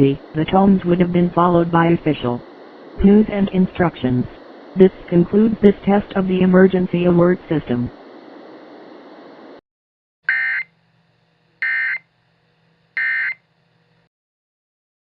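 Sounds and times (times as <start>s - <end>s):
faint hiss: 0.0s - 9.6s.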